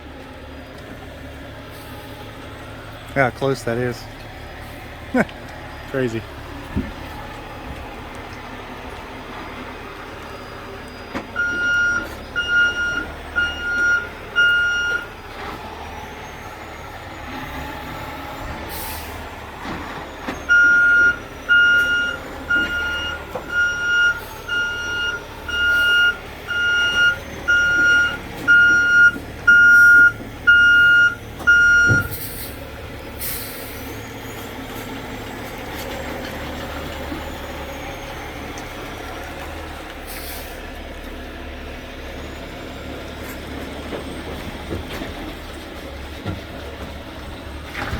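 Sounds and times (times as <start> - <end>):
truck engine running: 0.0 - 47.9
truck reverse alarm beeping: 8.5 - 39.1
air brake hisses: 32.0 - 32.6, 33.2 - 33.9, 40.1 - 40.6.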